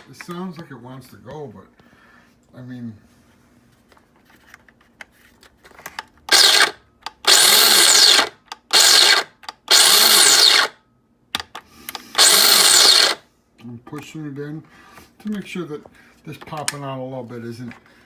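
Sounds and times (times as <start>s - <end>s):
coffee grinder motor whirring: 6.3s - 10.8s, 11.9s - 13.2s.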